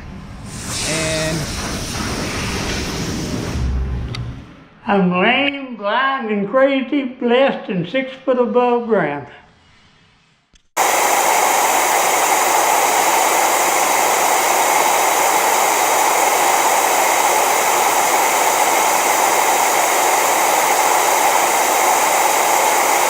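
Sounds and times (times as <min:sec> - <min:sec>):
static hiss: 0:10.8 - 0:23.0.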